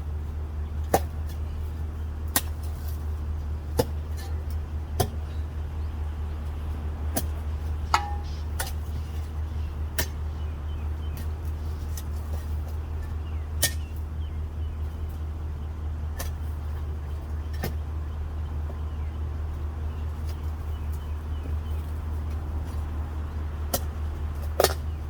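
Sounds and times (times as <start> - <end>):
vehicle engine humming: 0.0 - 25.0
sharp metallic knocks: 7.9 - 8.8.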